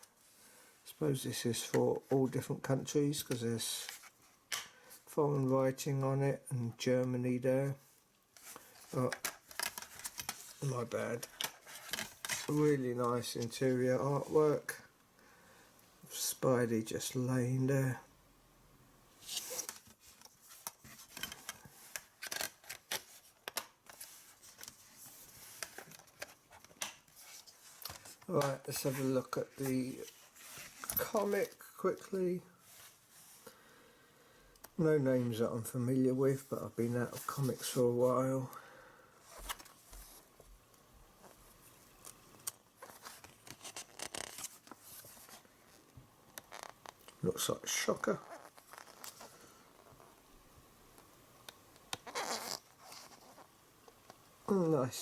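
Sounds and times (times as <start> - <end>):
paper rustling: 8.4 - 12.7, 19.2 - 32.0, 42.0 - 45.8.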